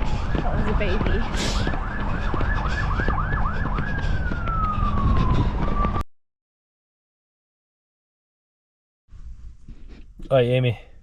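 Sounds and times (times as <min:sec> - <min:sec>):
heavy low rumble: 0:00.0 - 0:06.0
emergency siren yelp and wail: 0:00.0 - 0:06.1.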